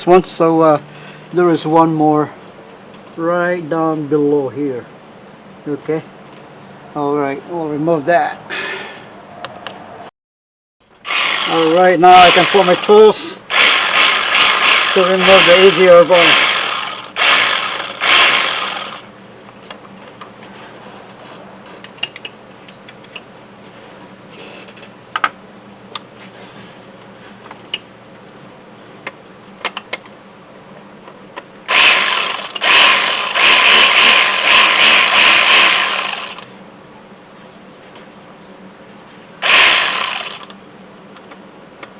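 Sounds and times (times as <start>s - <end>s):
power tool bursts: 11.0s - 19.1s, 31.7s - 36.5s, 39.4s - 40.5s.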